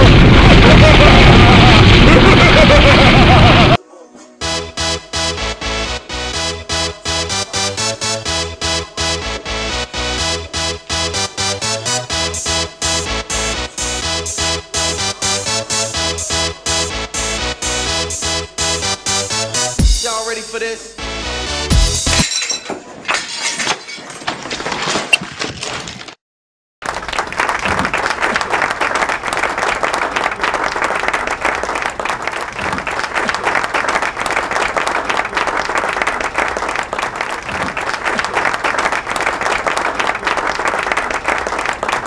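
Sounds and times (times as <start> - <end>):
crowd applause: 0.0 - 3.8, 26.8 - 42.0
crashing and breaking: 22.1 - 26.2.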